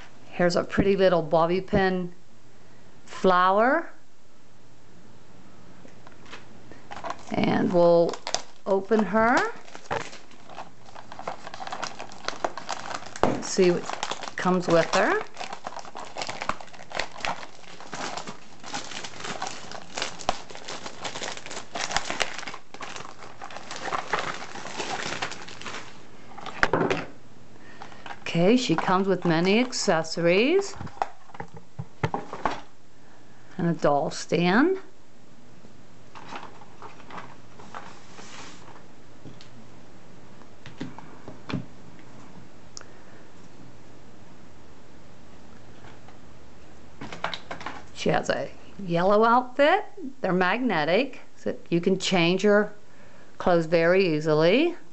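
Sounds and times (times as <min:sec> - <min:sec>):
steady low hum: 0:00.0 - 0:54.9
packaging crinkling and rustling: 0:06.1 - 0:27.0, 0:27.7 - 0:32.7, 0:36.1 - 0:39.6, 0:47.0 - 0:48.0.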